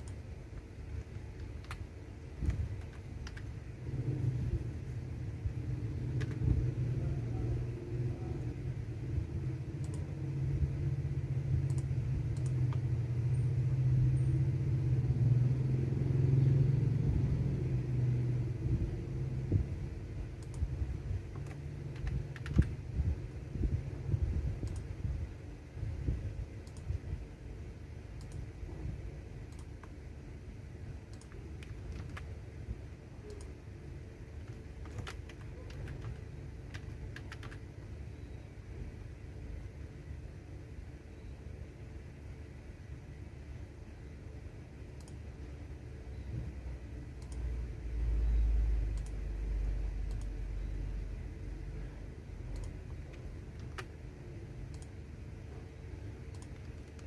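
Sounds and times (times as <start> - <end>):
computer keyboard typing: 0.0 - 4.6, 5.6 - 8.7, 9.4 - 10.8, 11.5 - 14.2, 20.2 - 25.1, 28.1 - 28.6, 29.4 - 30.1, 31.0 - 38.2, 48.8 - 51.0, 52.4 - 55.1, 56.0 - 57.0
low rumble: 1.7 - 27.1.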